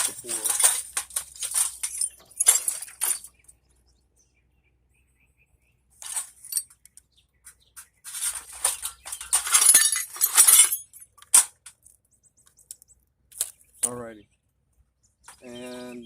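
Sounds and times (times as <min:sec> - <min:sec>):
metal scrap clinking and rattling: 0:00.0 - 0:03.5, 0:06.0 - 0:06.9, 0:08.0 - 0:11.9.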